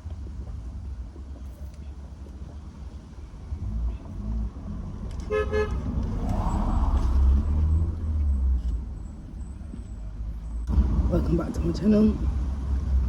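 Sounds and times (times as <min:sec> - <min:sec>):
low vehicle rumble: 0:00.0 - 0:13.0
car horn toot: 0:05.3 - 0:05.8.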